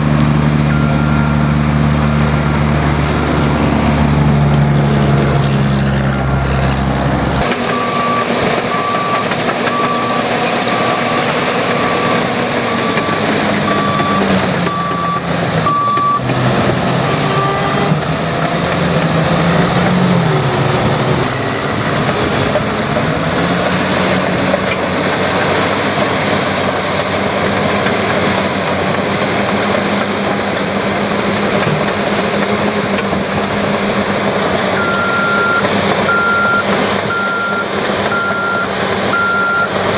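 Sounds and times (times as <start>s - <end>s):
diesel engine running: 0.0s - 39.9s
reversing alarm beeping: 0.3s - 2.8s, 7.5s - 16.3s, 34.8s - 39.9s.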